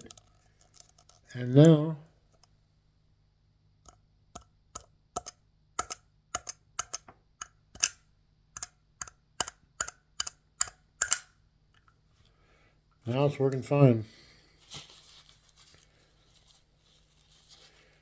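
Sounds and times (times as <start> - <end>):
plastic action figure clicks: 8.6 - 11.3.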